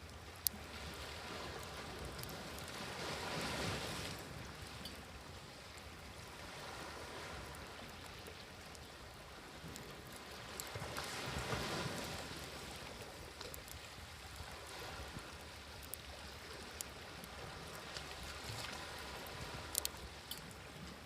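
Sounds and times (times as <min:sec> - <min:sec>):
waves washing in: 0:00.0 - 0:21.0
campfire crackling and popping: 0:00.1 - 0:03.6, 0:07.4 - 0:20.5.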